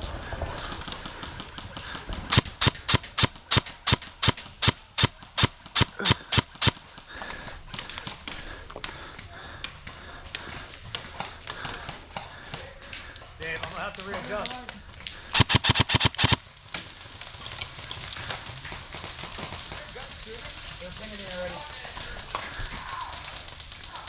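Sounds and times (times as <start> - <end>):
airsoft gun shots clicking: 2.3 - 6.8, 15.4 - 16.4.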